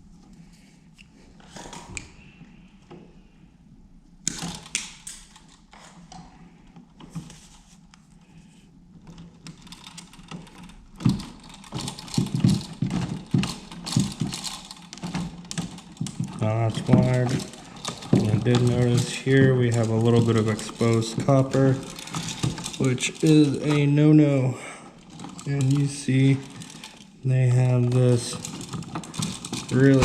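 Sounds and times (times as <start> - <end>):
hands handling stiff wires: 9.0 - 30.0.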